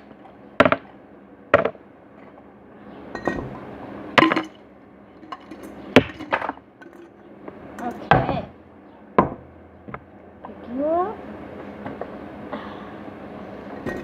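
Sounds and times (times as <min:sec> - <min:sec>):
sharp knocks and clinks: 0:03.1 - 0:03.6.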